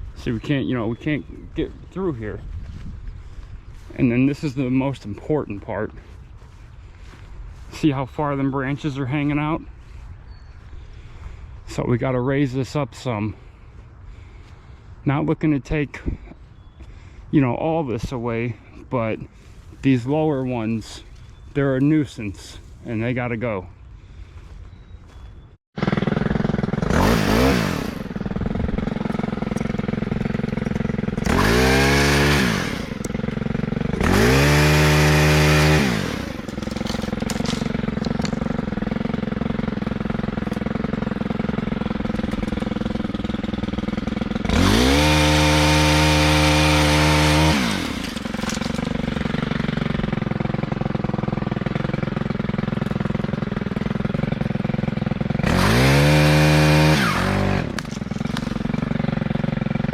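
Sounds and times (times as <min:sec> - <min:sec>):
chainsaw idling and revving: 0:25.8 - 0:59.9.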